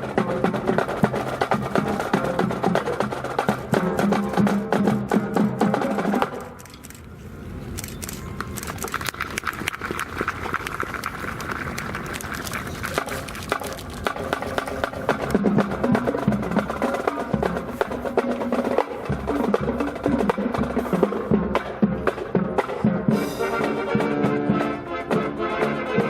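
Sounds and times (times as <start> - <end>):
marching band drums: 0.0 - 6.6, 9.9 - 26.0
low brass line: 14.1 - 26.0.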